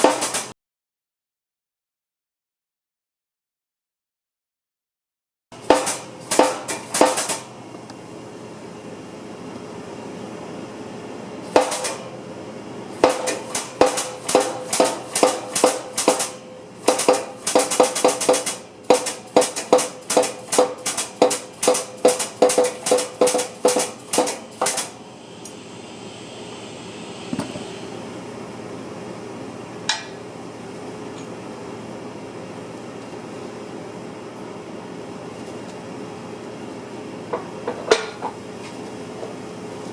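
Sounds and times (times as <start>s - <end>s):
hammer striking steel: 5.6s - 7.4s, 13.0s - 24.8s, 29.9s - 30.2s
steady hum: 5.6s - 35.4s.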